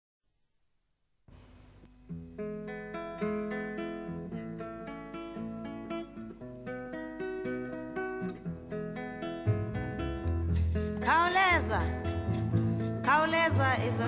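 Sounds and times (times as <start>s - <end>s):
faint hiss: 1.2s - 2.7s
acoustic guitar picking: 1.4s - 14.0s.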